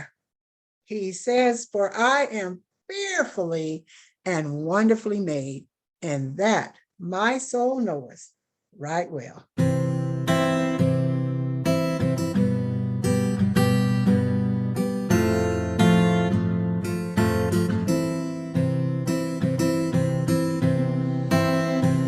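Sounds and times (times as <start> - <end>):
strummed acoustic guitar: 9.6 - 22.0.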